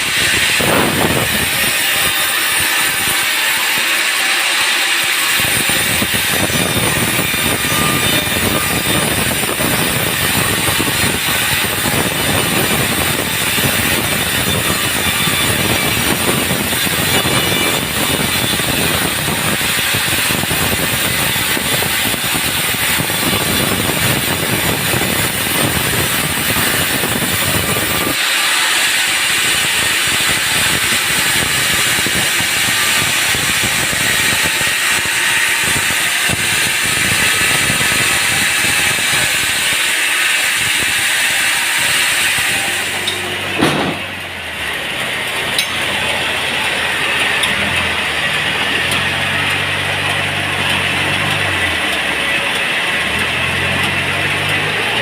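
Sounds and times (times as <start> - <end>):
sawmill saw cutting log: 0.0 - 55.0
low motor hum: 28.8 - 55.0
sharp knock: 43.6 - 44.1.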